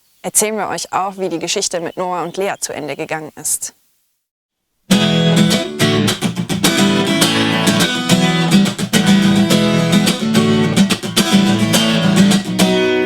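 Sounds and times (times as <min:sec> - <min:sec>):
strummed acoustic guitar music: 0:04.9 - 0:13.0.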